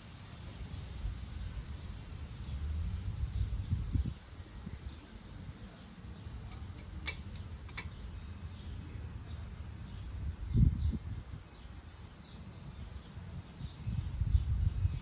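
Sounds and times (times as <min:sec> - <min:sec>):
hand tools clicking on bolts: 0:06.5 - 0:08.0.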